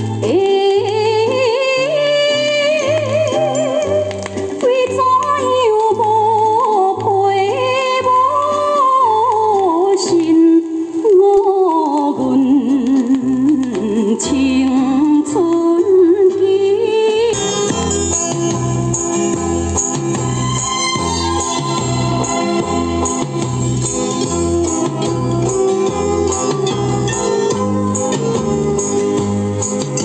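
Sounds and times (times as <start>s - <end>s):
song from stereo speakers: 0.0s - 30.0s.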